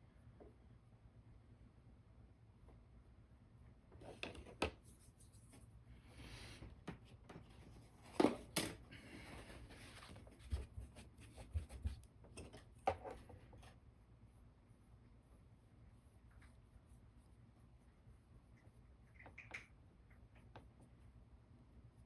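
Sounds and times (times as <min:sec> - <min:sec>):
paintbrush brushing: 0:04.8 - 0:06.4, 0:13.4 - 0:19.1.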